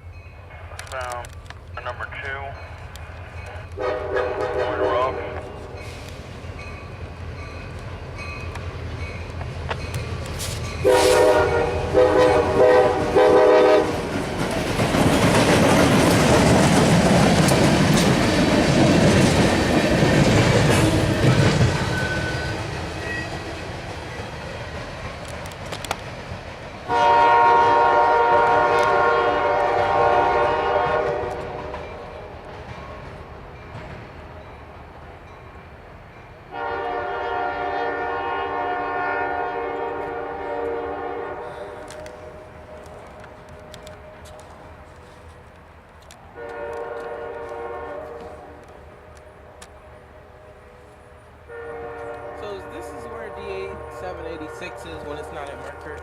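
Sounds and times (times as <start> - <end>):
train rumbling past: 0.0 - 56.0
locomotive air horn: 3.8 - 5.6, 10.8 - 14.0, 26.9 - 31.7, 36.5 - 42.9, 46.4 - 48.5, 51.4 - 54.9
wheels clicking over rail joints: 13.9 - 26.9.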